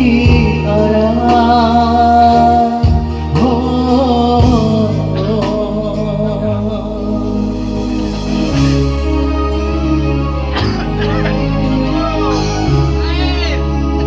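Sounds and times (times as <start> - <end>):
steady musical backing: 0.0 - 14.0
person singing: 10.8 - 13.7.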